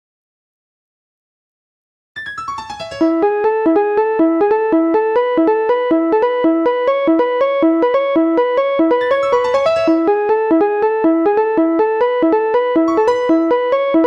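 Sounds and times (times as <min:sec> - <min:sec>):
synthesized ringtone melody: 0:02.2 - 0:03.9, 0:09.0 - 0:10.8, 0:12.9 - 0:14.0.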